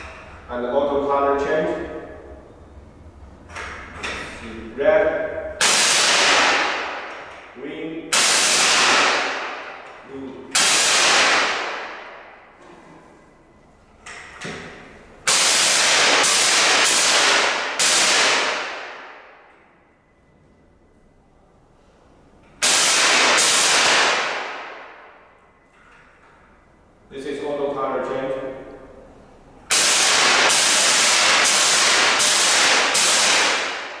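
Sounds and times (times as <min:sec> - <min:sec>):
loud hissing gas blasts: 0:05.6 - 0:07.0, 0:08.0 - 0:12.0, 0:15.2 - 0:18.8, 0:22.6 - 0:24.7, 0:29.7 - 0:34.0.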